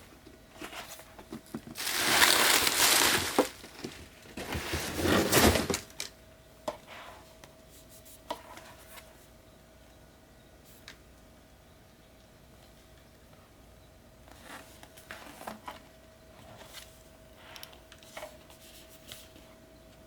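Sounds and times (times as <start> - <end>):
packaging crinkling and tearing: 1.6 - 4.1.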